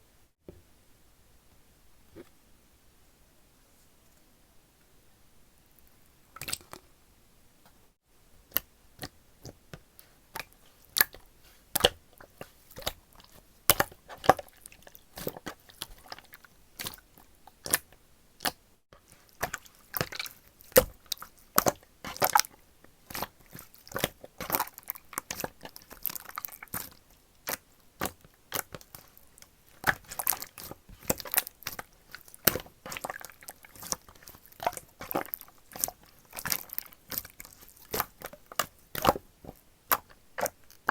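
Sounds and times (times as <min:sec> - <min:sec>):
slime clicking and popping: 0:29.8 - 0:39.2.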